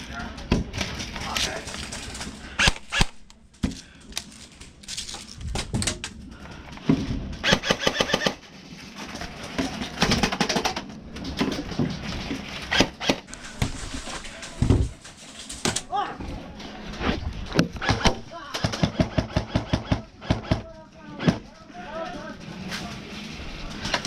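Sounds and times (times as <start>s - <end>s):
airsoft guns full-auto bursts: 7.4s - 8.4s.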